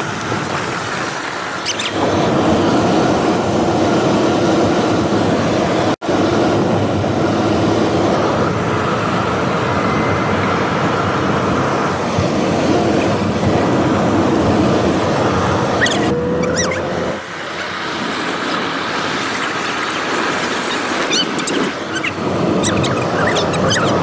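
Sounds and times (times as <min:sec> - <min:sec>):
car road and wind noise: 0:00.0 - 0:24.0
high chirps or squeaks: 0:01.6 - 0:02.0, 0:15.8 - 0:16.9, 0:20.6 - 0:24.0.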